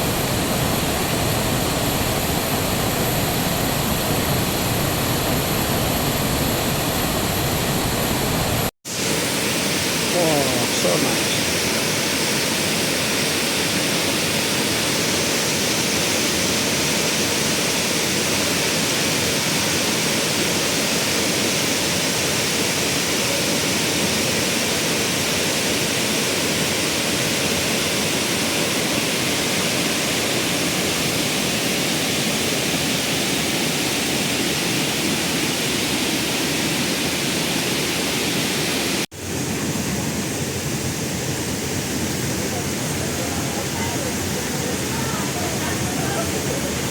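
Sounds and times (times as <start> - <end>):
waterfall rushing: 0.0 - 46.9.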